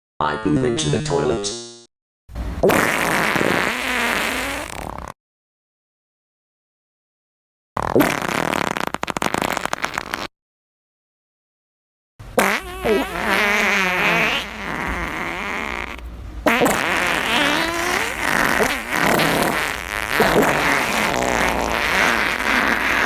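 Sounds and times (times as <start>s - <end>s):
wobbling pitched farts: 2.6s - 5.2s, 7.8s - 10.3s, 12.4s - 23.0s.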